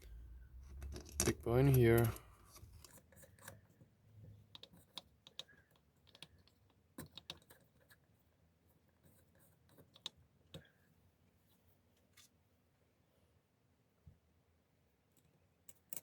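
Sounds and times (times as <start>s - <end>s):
small metal parts clicking: 0.0s - 3.0s.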